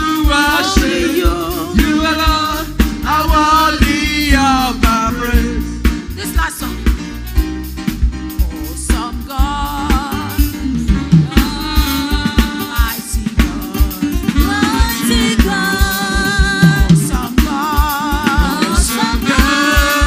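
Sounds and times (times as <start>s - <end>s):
band with drums and bass: 0.0s - 20.0s
person singing: 11.2s - 20.0s.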